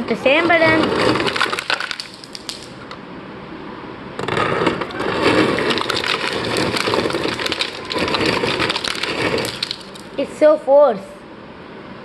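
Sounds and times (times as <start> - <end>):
ice dispenser pouring crushed ice: 0.8 - 2.8, 5.0 - 10.2.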